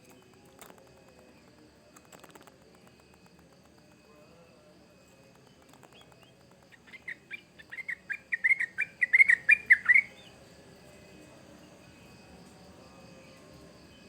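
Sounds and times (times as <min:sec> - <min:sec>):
faint insect trill: 0:00.0 - 0:14.0
bird singing bubbling notes: 0:06.7 - 0:10.3.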